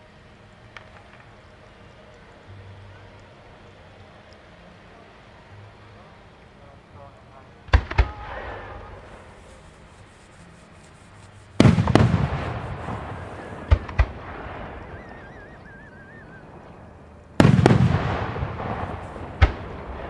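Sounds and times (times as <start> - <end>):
sharp firework reports: 7.0 - 20.0
fireworks booming and crackling: 7.7 - 9.9, 10.7 - 20.0.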